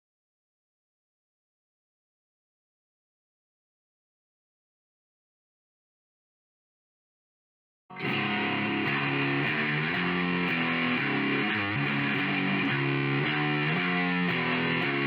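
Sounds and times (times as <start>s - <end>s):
distorted electric guitar music: 7.9s - 15.0s.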